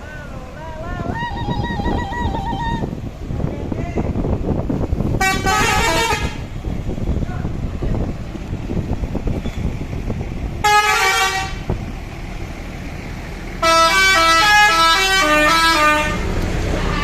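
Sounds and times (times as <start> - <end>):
low engine and street rumble: 0.0 - 17.0
musical air horn melody: 5.2 - 6.4, 10.6 - 11.6, 13.6 - 17.0.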